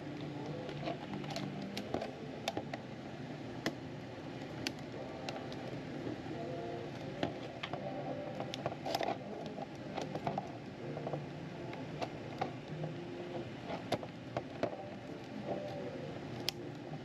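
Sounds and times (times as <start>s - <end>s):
steady low hum: 0.0s - 17.0s
plastic parts clicking and scraping: 0.4s - 2.8s, 6.9s - 11.2s, 13.6s - 16.8s.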